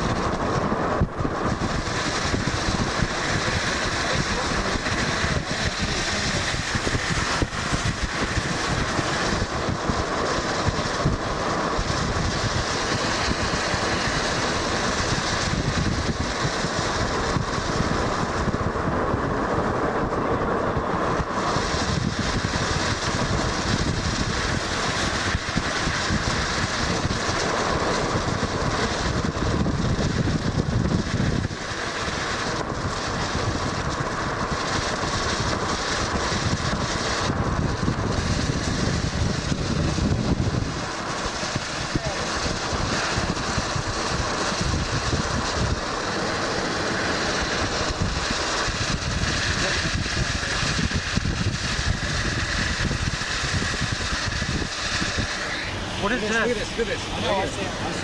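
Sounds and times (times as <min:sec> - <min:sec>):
road noise: 0:00.0 - 0:58.0
wind noise: 0:00.0 - 0:58.0.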